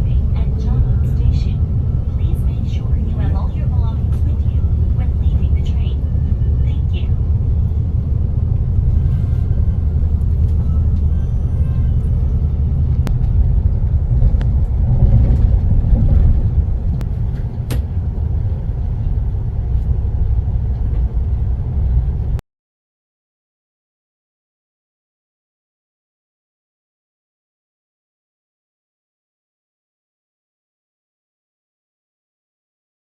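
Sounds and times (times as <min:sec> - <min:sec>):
vehicle rumble: 0:00.0 - 0:22.4.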